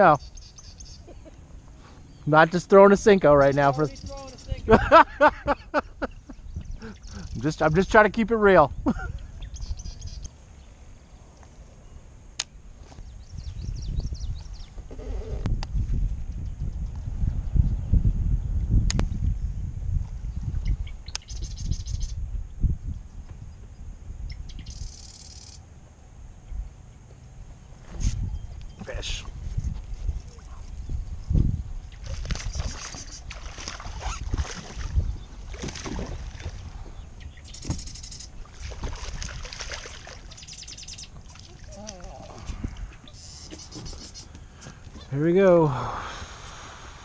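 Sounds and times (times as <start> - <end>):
wind buffeting microphone: 3.0 - 10.3, 13.0 - 24.9, 27.8 - 47.0
water lapping against kayak hull: 32.0 - 44.0.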